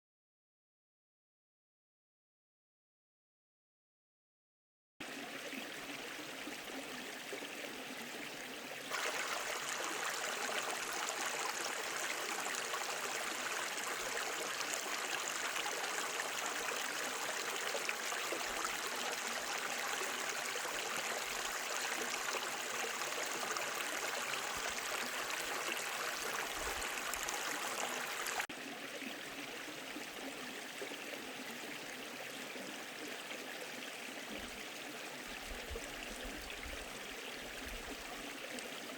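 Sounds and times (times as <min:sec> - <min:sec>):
stream rushing over rocks: 0:08.9 - 0:28.5.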